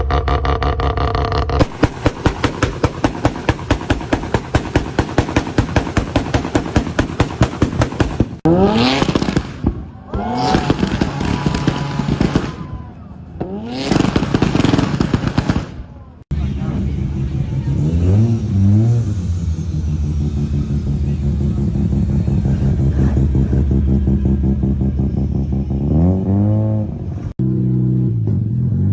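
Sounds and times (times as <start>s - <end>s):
engine revving in blips: 0.0s - 4.6s, 8.4s - 12.6s, 13.3s - 15.6s, 16.3s - 28.9s
rotary engine idling: 0.0s - 6.0s, 16.3s - 25.8s.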